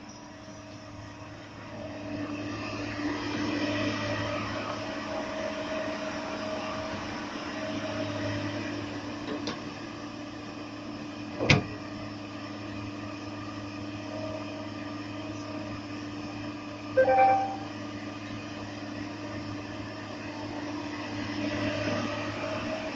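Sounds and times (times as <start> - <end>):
excavator engine running: 13.0 - 22.9.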